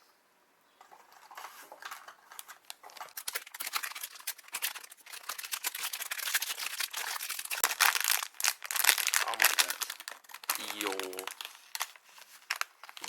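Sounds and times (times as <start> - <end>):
plastic wrapping crinkling: 1.1 - 13.0.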